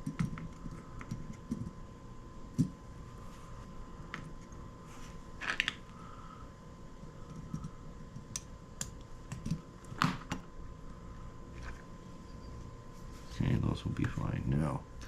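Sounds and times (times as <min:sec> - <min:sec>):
small parts and tools clicking: 0:07.2 - 0:10.4
faint steady tone: 0:10.6 - 0:15.0.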